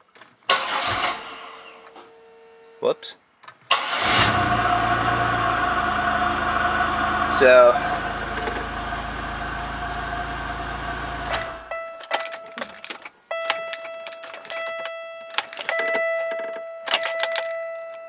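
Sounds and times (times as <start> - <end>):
car engine idling: 3.8 - 11.8
car warning chime: 11.2 - 18.0
sharp clicks and rattles: 11.2 - 18.0.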